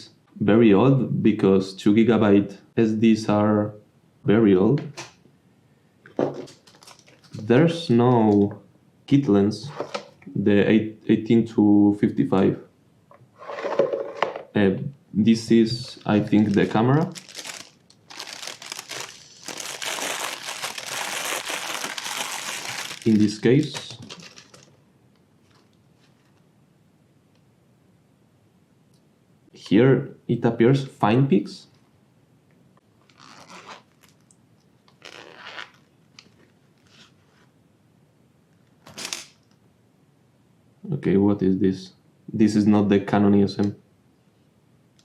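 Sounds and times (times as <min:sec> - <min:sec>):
packaging crinkling: 0:06.5 - 0:07.4, 0:15.8 - 0:24.8, 0:33.0 - 0:34.3, 0:38.8 - 0:39.4.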